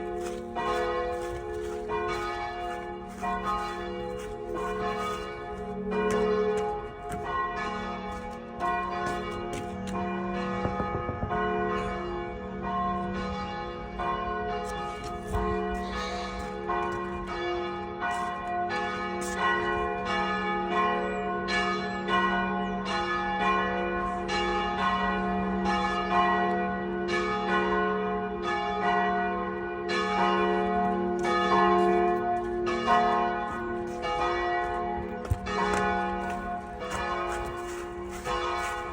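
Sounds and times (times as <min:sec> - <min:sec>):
church bells ringing: 0:00.0 - 0:38.9.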